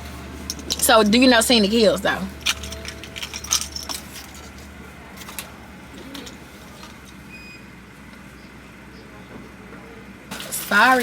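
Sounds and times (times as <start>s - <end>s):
car cabin hum: 0.0s - 7.3s.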